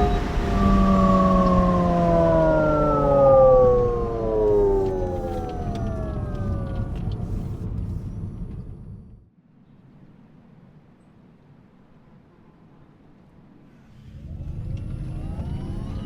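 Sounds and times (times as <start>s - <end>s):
synthesized electric motor tones: 0.0s - 7.9s, 14.1s - 16.0s
low rumble: 0.0s - 9.3s, 14.0s - 16.0s.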